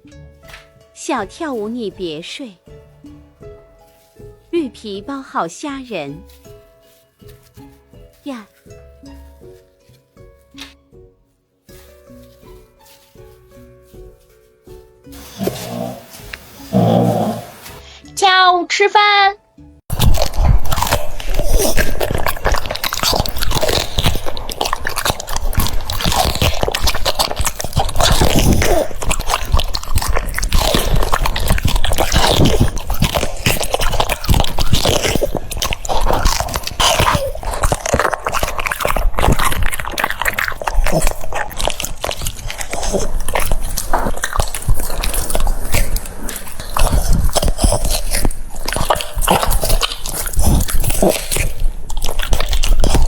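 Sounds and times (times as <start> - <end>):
dog chewing and crunching: 19.9 - 53.0.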